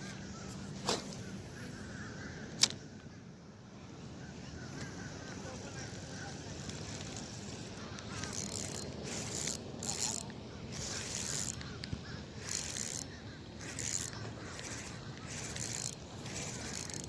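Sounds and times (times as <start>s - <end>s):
fishing reel whirring: 6.8s - 11.8s, 12.4s - 17.0s.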